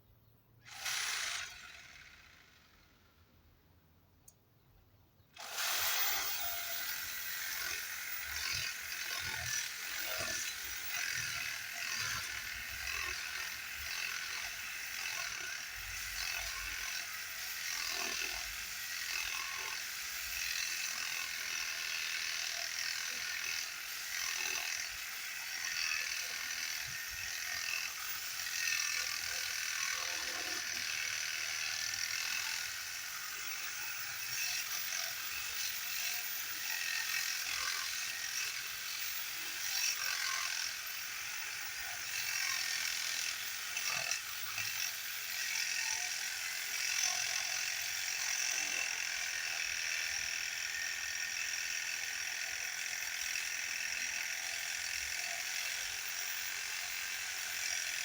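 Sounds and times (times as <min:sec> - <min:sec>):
power tool motor whining: 0:00.7 - 0:02.9, 0:05.4 - 0:13.6.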